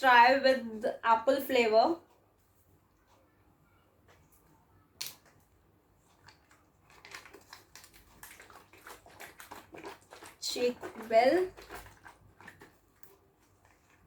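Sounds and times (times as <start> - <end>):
juice carton clicks and rustles: 6.2 - 10.3.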